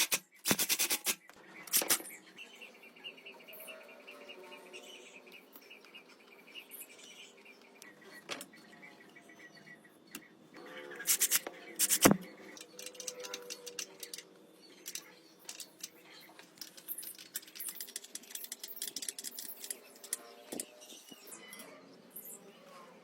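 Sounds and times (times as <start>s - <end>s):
tools clicking and scraping: 0.0s - 2.1s, 11.0s - 21.7s.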